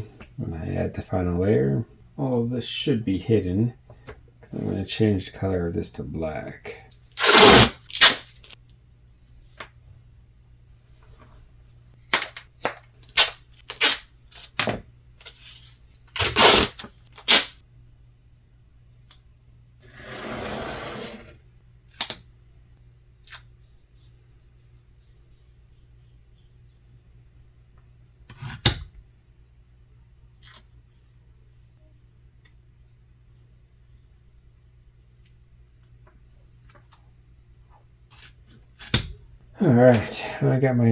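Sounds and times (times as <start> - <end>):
tape ripping off roll: 7.1 - 8.6, 12.1 - 15.4, 16.1 - 17.6.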